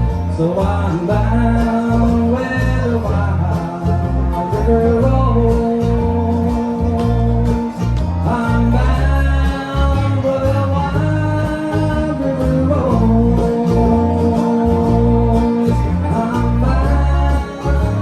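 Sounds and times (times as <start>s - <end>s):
acoustic strings: 0.0s - 18.0s
person singing: 0.0s - 18.0s.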